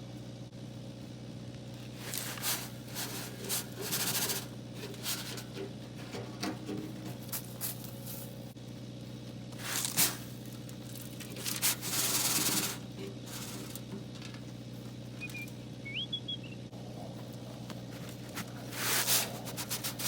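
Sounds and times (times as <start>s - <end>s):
scraping and rustling: 1.8s - 8.6s, 9.5s - 15.2s, 16.8s - 20.0s
short rising whistle: 15.2s - 16.6s.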